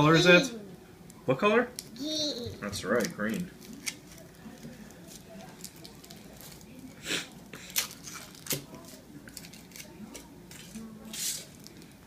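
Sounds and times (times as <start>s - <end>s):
wrapper crinkling and rustling: 2.9s - 12.0s.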